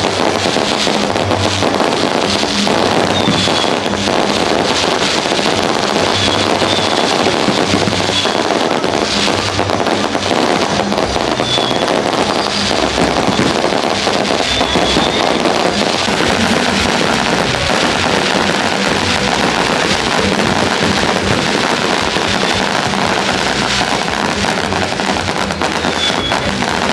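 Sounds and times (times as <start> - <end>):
fireworks crackling and popping: 0.0 - 26.9
music with low beat: 7.4 - 26.9.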